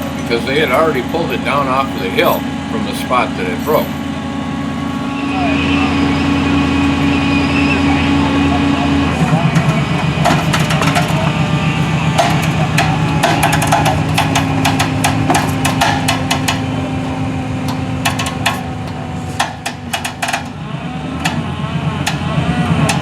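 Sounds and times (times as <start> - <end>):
vehicle engine running: 0.0 - 23.0
sharp knocks and clanks: 8.8 - 20.6, 21.2 - 23.0.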